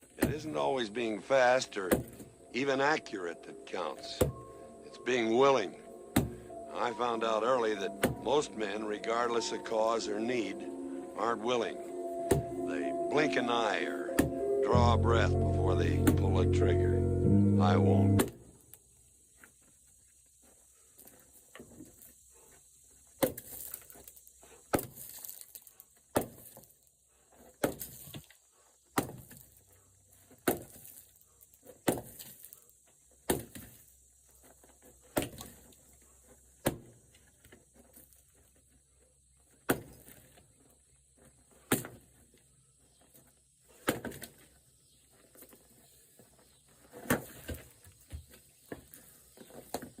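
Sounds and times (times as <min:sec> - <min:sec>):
firewood knocking against wood: 0:12.3 - 0:12.5.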